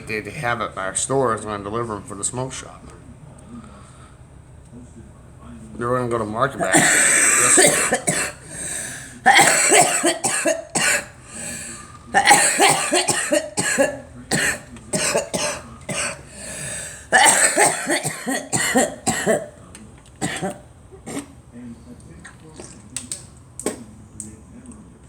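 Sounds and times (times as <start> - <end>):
girl coughing: 6.6 - 11.6, 12.2 - 19.5, 20.2 - 21.3.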